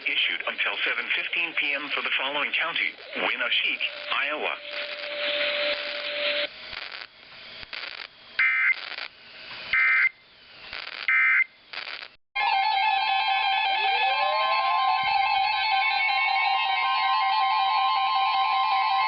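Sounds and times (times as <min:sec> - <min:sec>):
radio hiss: 0:00.0 - 0:12.2
warbling digital data bursts: 0:00.9 - 0:07.1, 0:07.7 - 0:09.1, 0:10.7 - 0:12.2.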